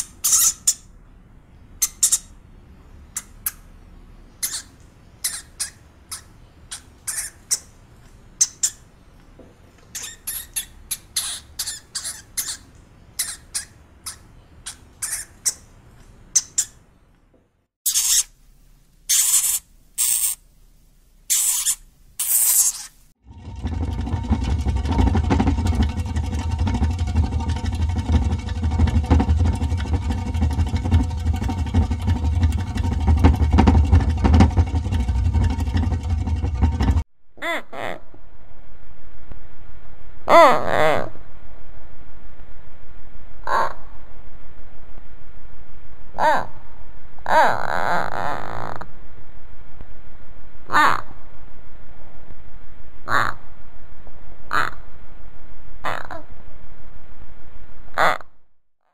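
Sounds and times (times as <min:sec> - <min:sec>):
hamster squeaking: 0:00.0 - 0:00.9, 0:01.8 - 0:02.3, 0:04.4 - 0:07.7, 0:08.4 - 0:08.8, 0:09.9 - 0:15.7, 0:16.3 - 0:16.8, 0:17.8 - 0:18.3, 0:19.1 - 0:20.4, 0:21.3 - 0:23.0
hamster wheel spinning: 0:21.4 - 0:37.0
wheel rattling: 0:23.2 - 0:37.0.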